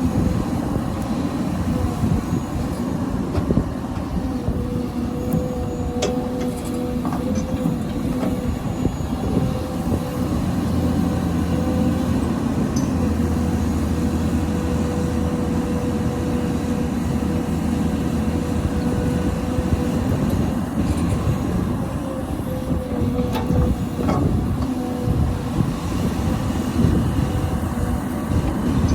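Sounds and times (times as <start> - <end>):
excavator diesel engine: 0.0 - 28.9.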